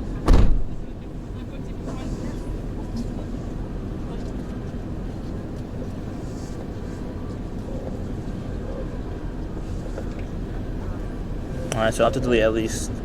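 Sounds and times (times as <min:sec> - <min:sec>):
vehicle road and engine rumble: 0:00.0 - 0:13.0.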